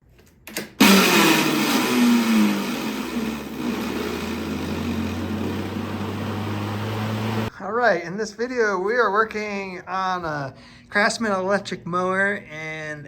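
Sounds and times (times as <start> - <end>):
electric lawnmower racket: 0.8 - 7.5.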